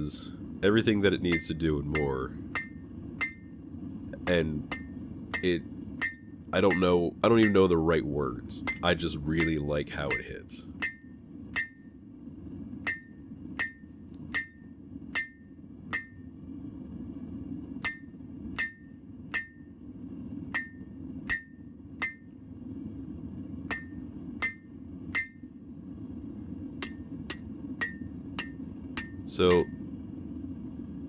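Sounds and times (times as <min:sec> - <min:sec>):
forge burner roaring: 0:00.0 - 0:31.0
hammer striking steel on anvil: 0:01.3 - 0:03.5, 0:04.2 - 0:07.8, 0:08.6 - 0:11.9, 0:12.8 - 0:16.3, 0:17.8 - 0:19.7, 0:20.5 - 0:22.3, 0:23.7 - 0:25.4, 0:26.8 - 0:29.9.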